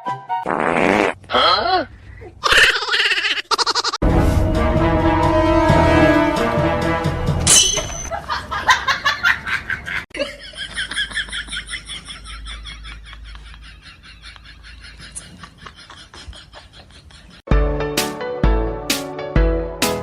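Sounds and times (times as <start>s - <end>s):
rhythmic laughing: 8.1s - 17.4s.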